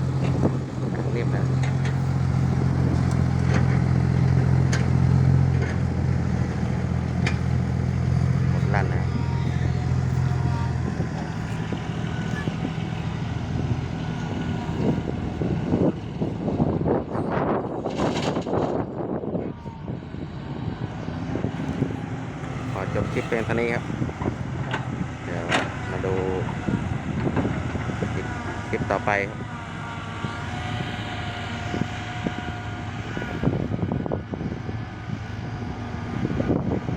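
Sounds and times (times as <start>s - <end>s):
diesel engine running under load: 0.0s - 36.9s
knocks and clatters: 17.9s - 18.8s.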